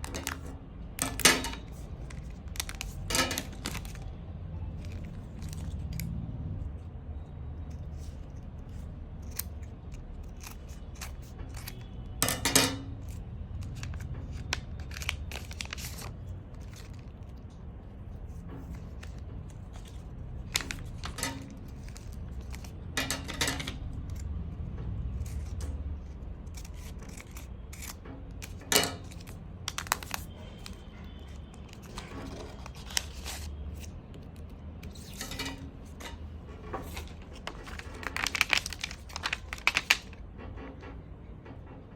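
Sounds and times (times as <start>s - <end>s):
plastic crinkling and tearing: 0.0s - 6.2s, 8.7s - 12.0s, 13.0s - 17.6s, 18.6s - 23.0s, 26.5s - 36.2s, 36.8s - 40.2s
plastic packaging clicks and taps: 27.8s - 30.8s, 36.8s - 40.2s.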